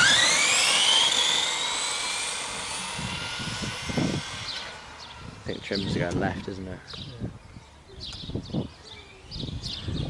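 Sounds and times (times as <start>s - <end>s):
electric motor whine accelerating: 0.0s - 6.5s.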